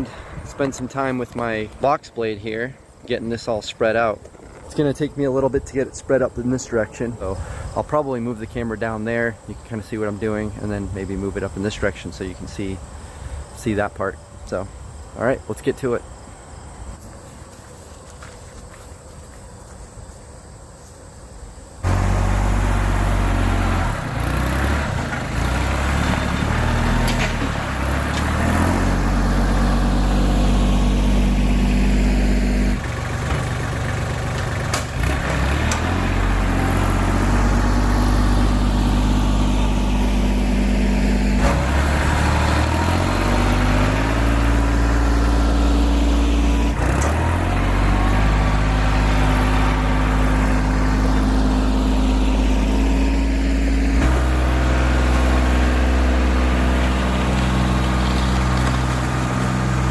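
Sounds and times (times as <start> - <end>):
tractor diesel engine revving: 21.8 - 59.9.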